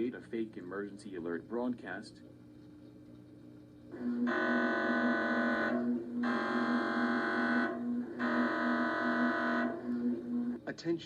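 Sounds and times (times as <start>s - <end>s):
harsh electronic alert buzzing: 3.9s - 10.6s.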